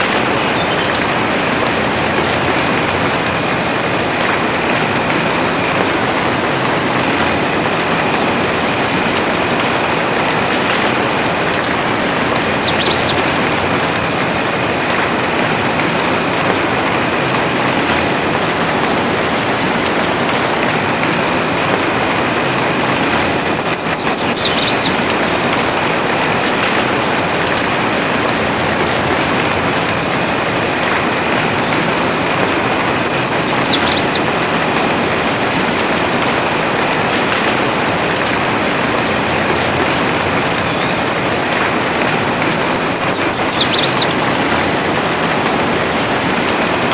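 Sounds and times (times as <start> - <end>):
rain falling in forest: 0.0 - 46.9
high-pitched drone: 8.0 - 14.8, 22.0 - 26.1, 31.8 - 36.1, 40.2 - 45.6.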